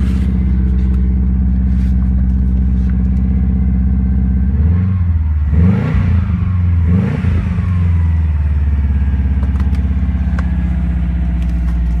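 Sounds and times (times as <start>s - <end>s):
engine revving and idling: 0.0s - 12.0s.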